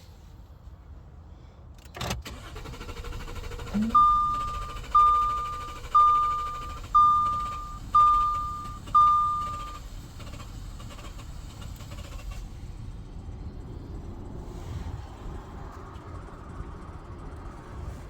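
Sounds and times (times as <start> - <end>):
dashboard warning chime: 3.6 - 9.8.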